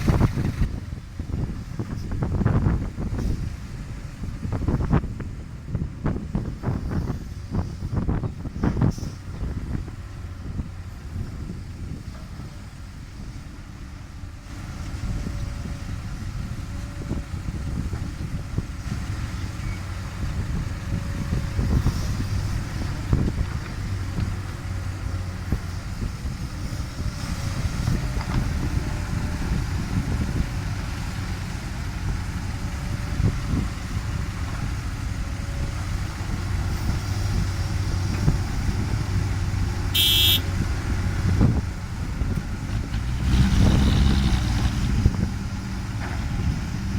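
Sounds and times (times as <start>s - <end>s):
diesel excavator running: 0.0s - 46.9s.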